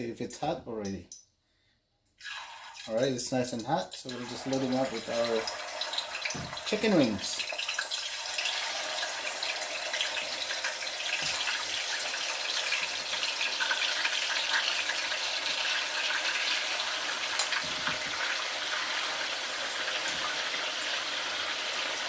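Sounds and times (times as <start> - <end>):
wings frying in hot oil: 2.2 - 22.0.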